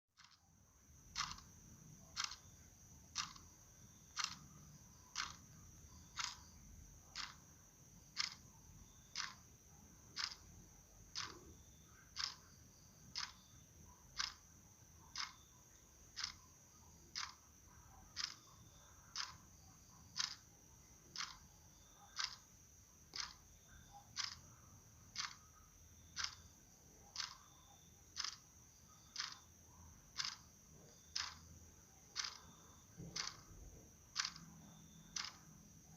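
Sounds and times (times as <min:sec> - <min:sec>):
faint high-pitched whine: 0:00.2 - 0:35.9
steady ticking: 0:00.2 - 0:35.9.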